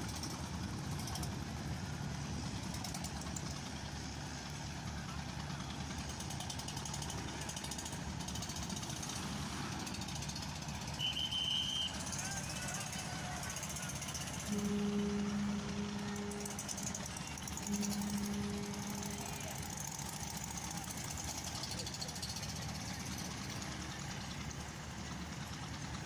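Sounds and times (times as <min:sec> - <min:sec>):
boat engine droning: 0:00.0 - 0:26.0
high steady tone: 0:13.9 - 0:20.8.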